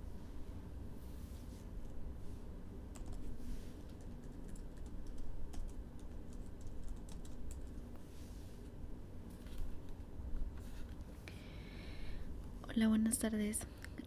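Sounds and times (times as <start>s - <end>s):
typing on computer keyboard: 2.9s - 3.3s, 3.9s - 7.8s.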